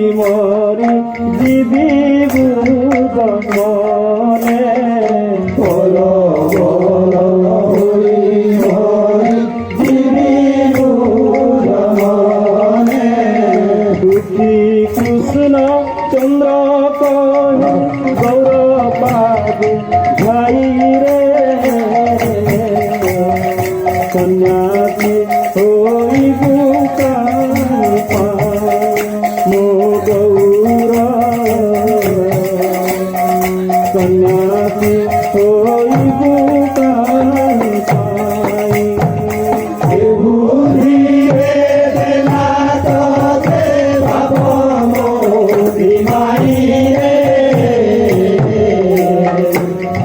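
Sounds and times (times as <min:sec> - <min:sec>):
devotional melody: 0:00.0 - 0:50.0
drum strokes: 0:00.0 - 0:50.0
rattling percussion: 0:00.0 - 0:50.0.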